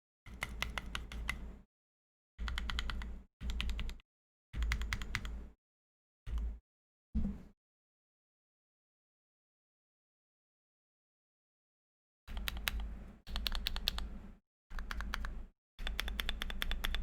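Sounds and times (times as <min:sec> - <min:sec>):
mechanical keyboard typing: 0:00.3 - 0:01.5, 0:02.4 - 0:04.0, 0:04.6 - 0:05.3, 0:12.3 - 0:14.1, 0:14.7 - 0:17.0.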